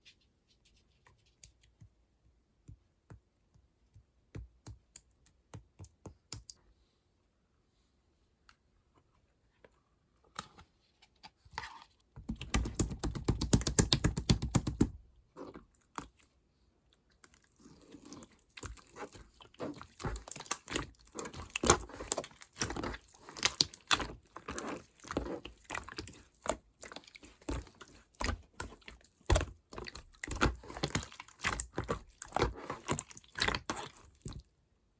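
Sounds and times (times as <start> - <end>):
slime crackling and popping: 18.6 - 34.4.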